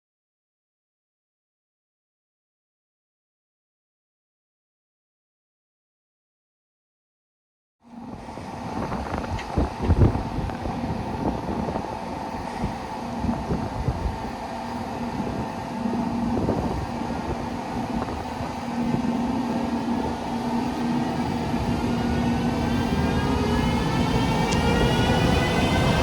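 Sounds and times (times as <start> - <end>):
train motor whine rising: 7.9 - 26.0
train rumble and hum: 7.9 - 26.0.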